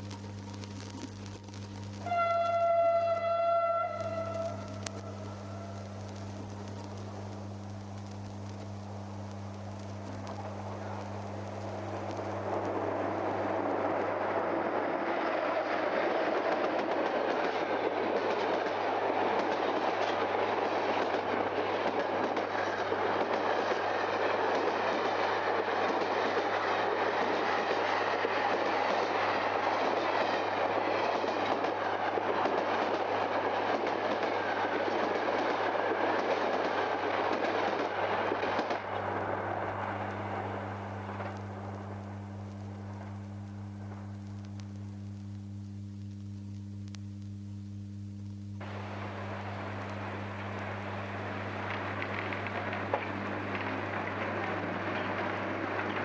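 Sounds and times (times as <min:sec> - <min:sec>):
low steady hum: 0:00.0 - 0:15.8, 0:37.9 - 0:56.0
train wheels on rails: 0:00.0 - 0:44.2, 0:48.6 - 0:56.0.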